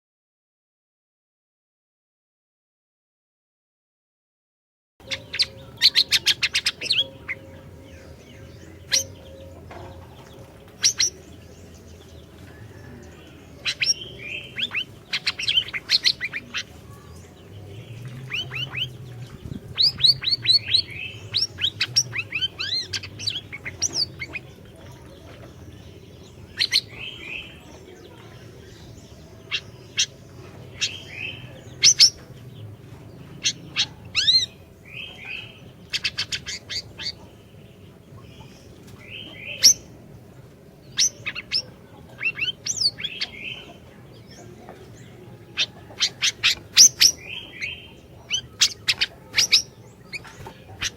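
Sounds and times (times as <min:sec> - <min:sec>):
bird chirping and trilling: 0:05.0 - 0:50.9
steady low hum: 0:05.0 - 0:50.9.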